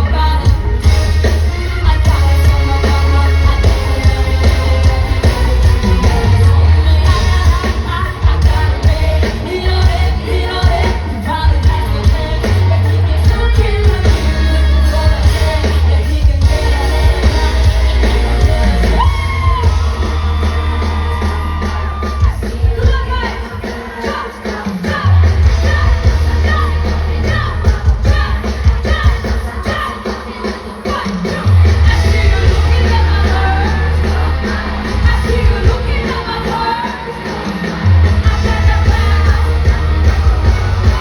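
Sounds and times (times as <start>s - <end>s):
heavy bass line: 0.0s - 23.2s, 25.1s - 29.2s, 31.5s - 36.5s, 37.6s - 41.0s
live pop song over sound system: 0.0s - 41.0s
person singing: 0.0s - 41.0s
shouts: 18.9s - 23.3s.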